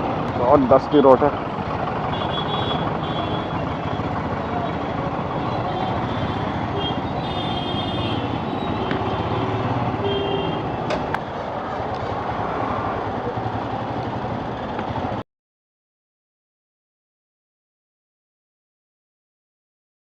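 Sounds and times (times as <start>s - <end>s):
motorcycle engine running: 0.0s - 15.2s
vehicle horn tones: 2.1s - 3.7s, 5.4s - 10.8s
wind and tyre noise: 3.8s - 15.2s.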